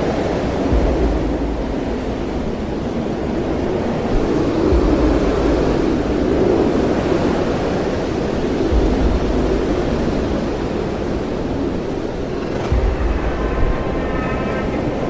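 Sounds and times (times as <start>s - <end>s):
rushing wind and sea: 0.0s - 15.0s
wind gust buffeting microphone: 0.0s - 15.0s.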